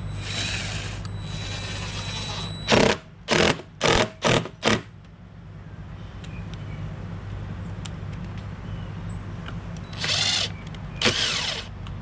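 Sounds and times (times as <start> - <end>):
power drill bursts: 0.2 - 4.8, 10.0 - 11.7.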